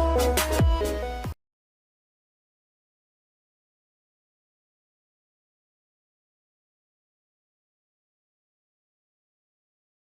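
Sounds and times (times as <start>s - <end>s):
electronic music with synth: 0.0s - 1.4s.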